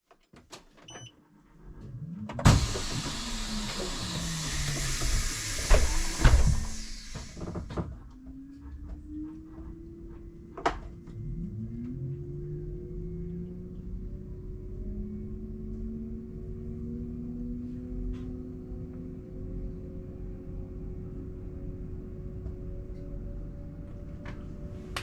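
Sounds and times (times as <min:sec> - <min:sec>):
bus engine and drivetrain whine: 0:00.9 - 0:25.0
compressed air hiss: 0:02.5 - 0:07.7.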